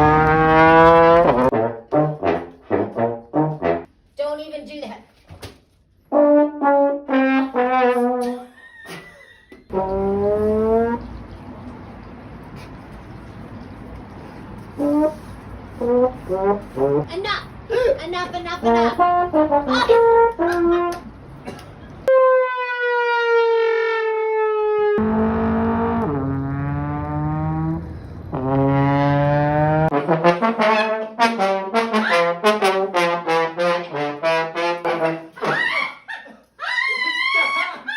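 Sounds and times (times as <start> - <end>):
trombone-like brass notes: 0.0 - 3.9, 6.1 - 8.4, 9.7 - 11.0, 14.8 - 17.1, 18.6 - 21.0, 22.1 - 35.5.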